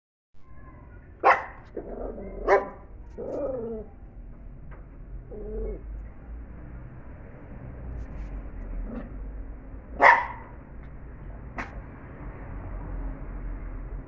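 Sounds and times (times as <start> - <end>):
dog barking: 1.2 - 3.4, 10.0 - 10.6
dog grumbling: 1.8 - 2.5, 3.1 - 3.9, 5.3 - 5.9.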